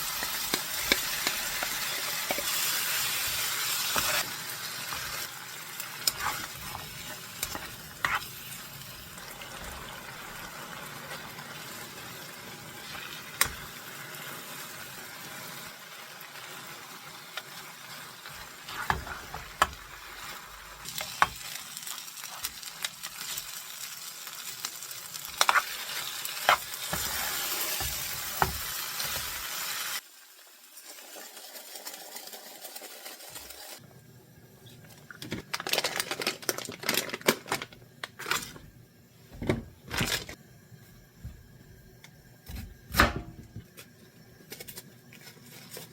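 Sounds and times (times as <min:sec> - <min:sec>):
food sizzling in a pan: 0:00.0 - 0:34.6.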